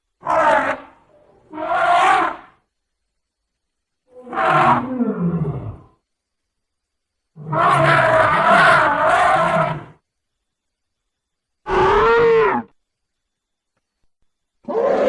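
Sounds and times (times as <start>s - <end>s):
long rough creature call: 11.6s - 12.7s.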